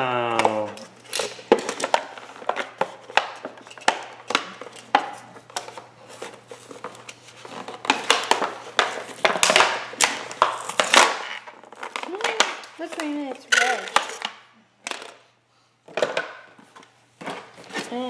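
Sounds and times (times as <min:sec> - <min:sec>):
plastic packaging crinkling: 0:00.5 - 0:14.4
plastic pieces clicking and tapping: 0:07.6 - 0:15.2.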